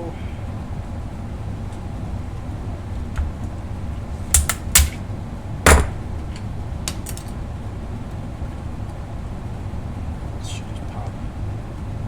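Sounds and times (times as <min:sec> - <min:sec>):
steady low hum: 0:00.0 - 0:08.4
hand tool prying metal tabs: 0:04.2 - 0:05.0, 0:05.7 - 0:07.3.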